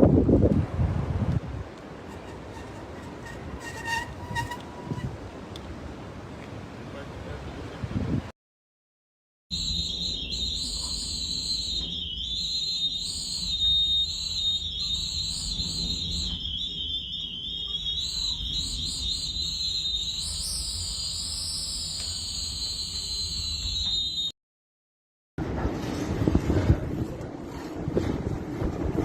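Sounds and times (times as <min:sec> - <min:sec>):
storm wind whistling: 0:00.0 - 0:05.9, 0:09.6 - 0:24.2.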